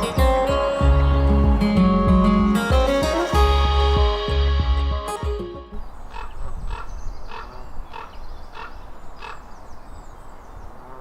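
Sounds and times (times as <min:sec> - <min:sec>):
bird harsh calls: 0:05.7 - 0:11.0.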